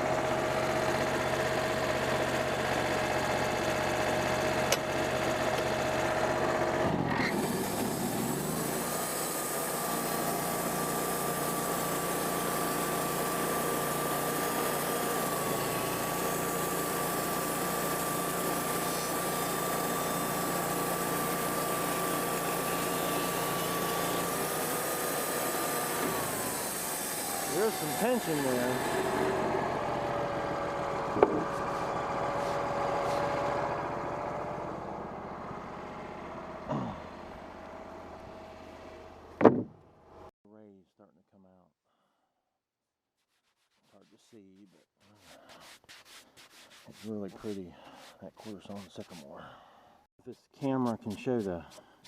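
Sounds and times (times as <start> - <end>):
band sawmill whining: 0.0 - 39.5.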